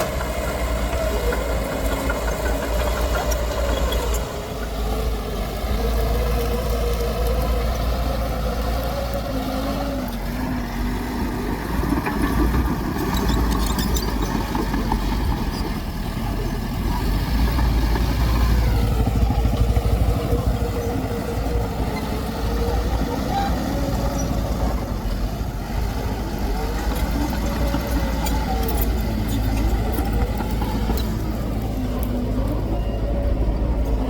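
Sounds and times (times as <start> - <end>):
machinery rattle: 0.0 - 4.9, 25.8 - 32.7
heavy diesel machinery engine rumble: 0.0 - 34.0.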